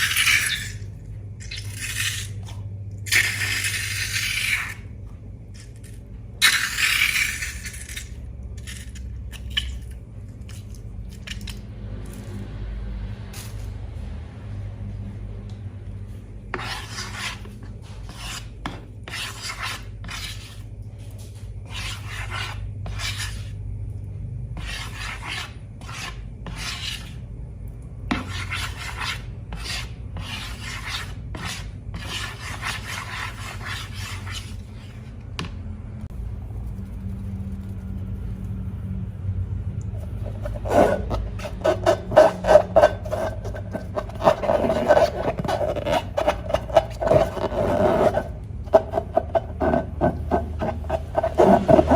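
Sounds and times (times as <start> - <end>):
steady low hum: 0.0 - 51.9
scratchy rubbing strokes: 16.5 - 20.7, 21.7 - 23.5, 28.2 - 35.1, 40.0 - 51.9.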